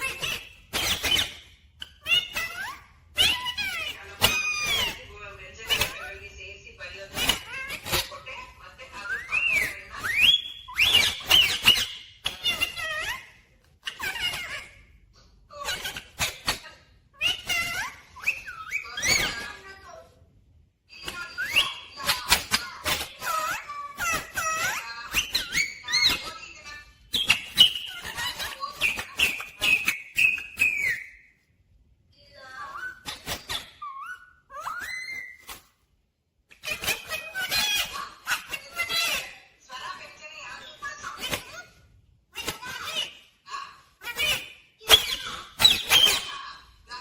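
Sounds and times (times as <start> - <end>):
parrot whistling and chattering: 0.0 - 6.3, 7.0 - 15.0, 15.6 - 19.8, 20.9 - 31.5, 32.4 - 35.8, 36.5 - 39.4, 44.0 - 47.0
parrot whistled calls: 9.0 - 13.2, 17.2 - 19.5, 27.1 - 31.3, 32.7 - 35.6, 44.2 - 46.4.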